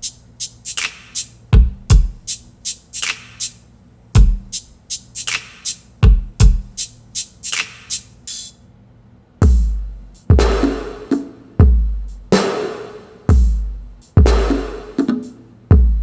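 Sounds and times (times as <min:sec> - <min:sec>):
snare hits: 0:00.7 - 0:03.6, 0:04.2 - 0:08.1, 0:09.4 - 0:11.5, 0:12.1 - 0:15.4
bass drum hits: 0:09.4 - 0:14.9.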